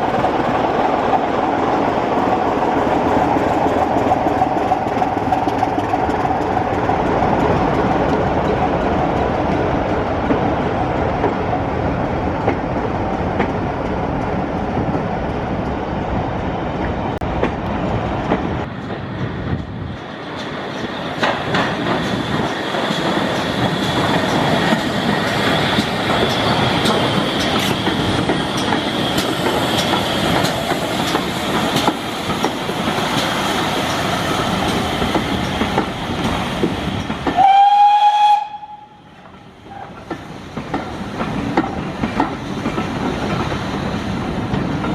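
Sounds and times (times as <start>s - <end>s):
train wheels clattering on rails: 0.0s - 15.8s, 16.7s - 44.9s
high-pitched train whistle: 37.3s - 39.1s.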